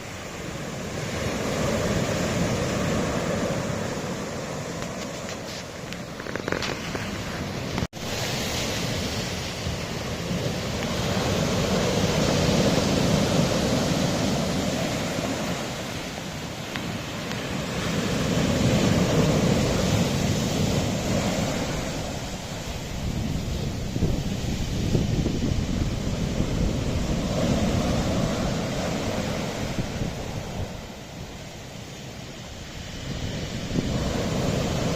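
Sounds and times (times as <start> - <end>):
waves washing against rocks: 0.0 - 34.9
wind on microphone: 0.0 - 34.9.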